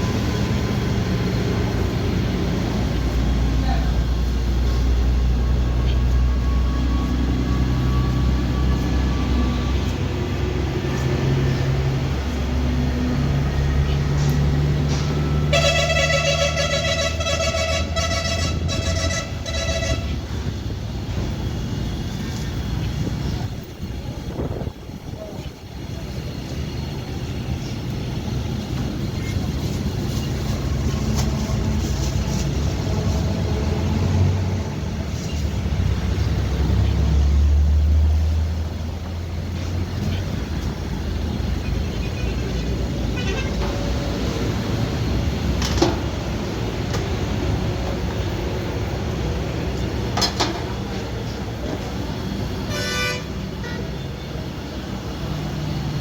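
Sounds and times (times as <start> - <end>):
vehicle engines running: 0.0 - 56.0.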